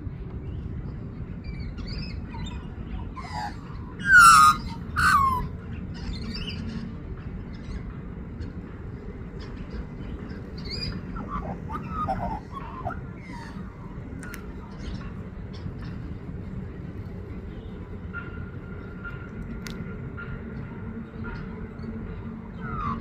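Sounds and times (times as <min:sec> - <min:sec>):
magpie harsh calls: 0:03.2 - 0:05.5, 0:10.8 - 0:13.6
magpie warbling: 0:03.2 - 0:05.5, 0:10.8 - 0:13.6.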